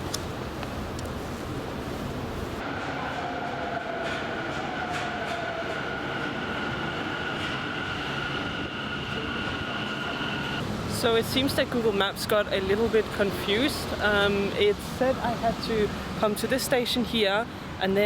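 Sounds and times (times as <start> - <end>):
subway train electric whine: 0.0 - 11.6
train rumble: 0.0 - 14.0.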